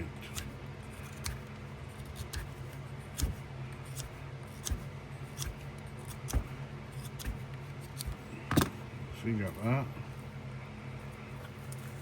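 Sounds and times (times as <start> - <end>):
knife whittling wood: 0.0 - 8.2.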